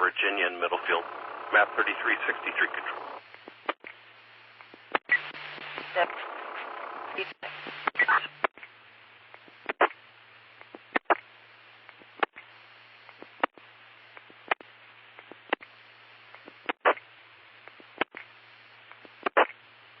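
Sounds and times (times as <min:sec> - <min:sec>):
radio channel hiss: 0:00.0 - 0:20.0
short radio crackle: 0:00.6 - 0:03.9, 0:09.6 - 0:10.0, 0:10.7 - 0:11.3, 0:16.4 - 0:17.1, 0:19.0 - 0:19.6.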